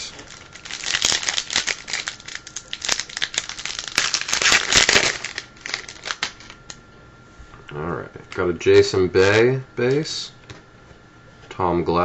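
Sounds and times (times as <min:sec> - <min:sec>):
wrapper tearing and crinkling: 0:00.0 - 0:06.7.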